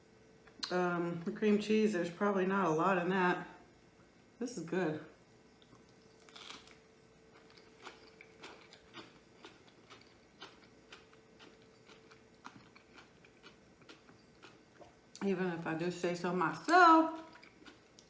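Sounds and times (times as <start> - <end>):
faint steady hum: 0.0 - 18.0
chewing with mouth clicks: 5.6 - 15.3, 16.6 - 18.0.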